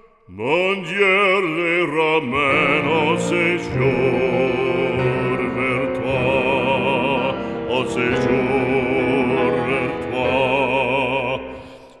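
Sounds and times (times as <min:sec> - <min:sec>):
operatic singing: 0:00.0 - 0:12.0
instrumental accompaniment: 0:02.4 - 0:12.0.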